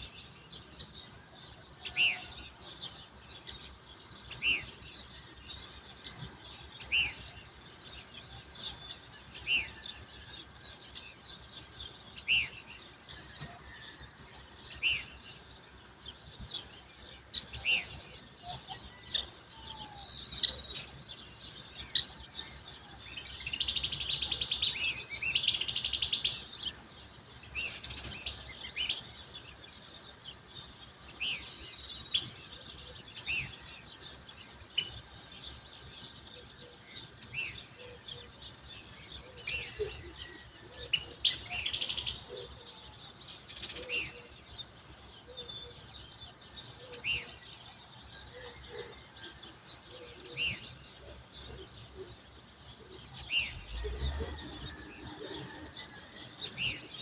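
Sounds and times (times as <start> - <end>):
songbirds chirping: 0.0 - 57.0
faint low rumble: 53.4 - 55.8.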